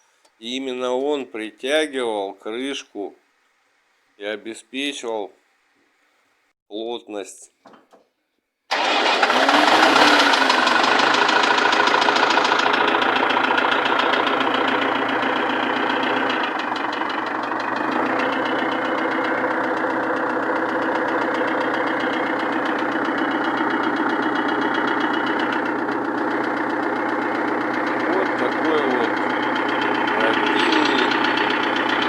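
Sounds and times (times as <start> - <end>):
diesel engine idling: 8.7 - 32.0.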